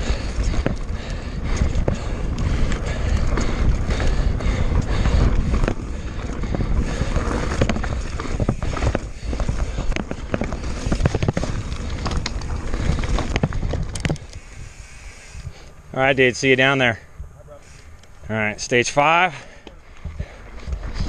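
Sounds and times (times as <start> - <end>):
bike clacking and rattling on rocks: 0.0 - 14.5
wind and tyre rumble: 0.0 - 21.0.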